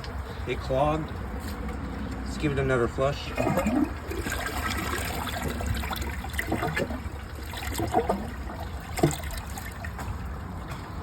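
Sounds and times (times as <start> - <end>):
water trickling in toilet: 3.4 - 10.2.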